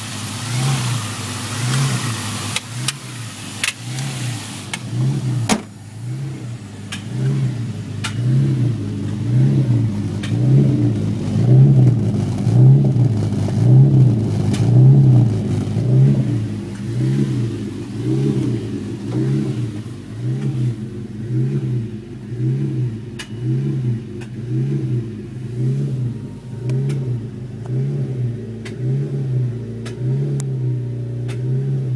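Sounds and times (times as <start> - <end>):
car engine hunting at idle: 0.0 - 31.9.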